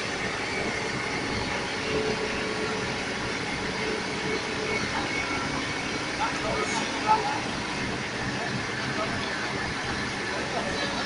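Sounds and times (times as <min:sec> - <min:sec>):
diesel engine drone: 0:00.0 - 0:11.0
outdoor noise: 0:00.0 - 0:11.0.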